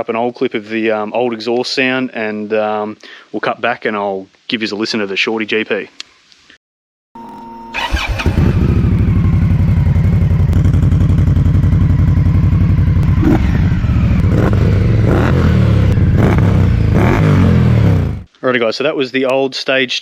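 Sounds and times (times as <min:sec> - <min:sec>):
motorcycle throttle blips: 0:07.3 - 0:18.3
motorcycle engine idling: 0:07.8 - 0:18.3.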